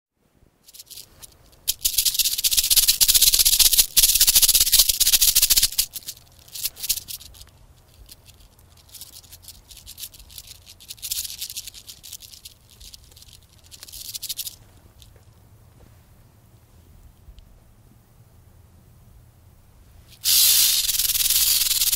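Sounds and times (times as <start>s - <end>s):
rattlesnake tail rattling: 0.6s - 15.2s, 20.1s - 21.9s.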